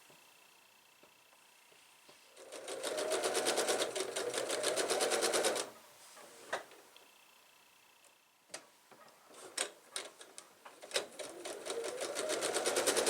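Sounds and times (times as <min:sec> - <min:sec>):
sewing machine stitching: 0:02.4 - 0:05.8, 0:10.8 - 0:13.0.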